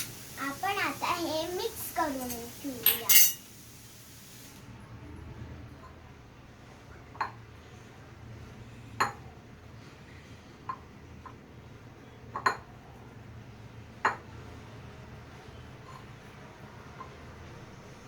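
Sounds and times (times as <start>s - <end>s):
spoon clinking against bowl: 2.8s - 3.5s.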